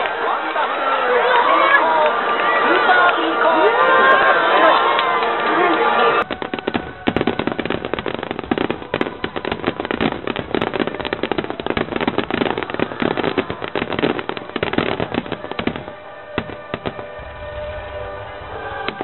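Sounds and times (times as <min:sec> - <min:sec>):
steady musical tones: 0:05.2 - 0:19.0
fireworks bangs and crackling: 0:06.2 - 0:19.0.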